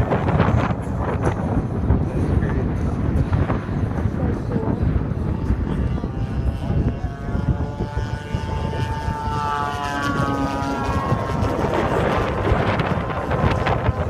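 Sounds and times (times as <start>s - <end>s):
wind rumble on microphone: 0.0s - 14.0s
model airplane motor whining: 4.0s - 14.0s.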